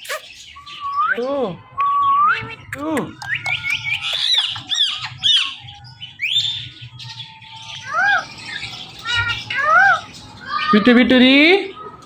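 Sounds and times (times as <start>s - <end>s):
parrot squawking: 0.0s - 0.7s, 2.3s - 10.8s.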